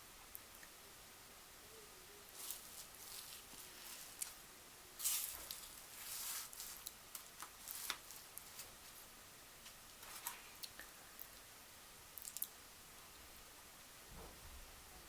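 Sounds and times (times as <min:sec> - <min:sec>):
short rustling: 0:02.3 - 0:04.4, 0:05.0 - 0:10.4.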